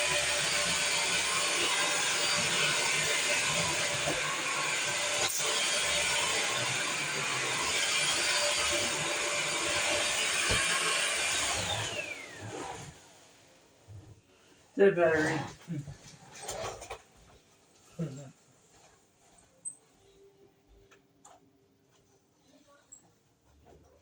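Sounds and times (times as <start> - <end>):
vacuum cleaner running: 0.0 - 13.4.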